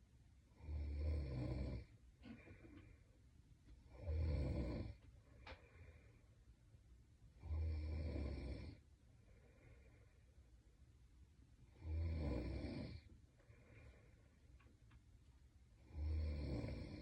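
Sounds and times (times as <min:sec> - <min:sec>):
quiet breathing: 0:00.0 - 0:17.0
woman snoring: 0:00.6 - 0:02.8, 0:03.9 - 0:05.0, 0:07.4 - 0:08.8, 0:11.7 - 0:13.1, 0:15.8 - 0:17.0.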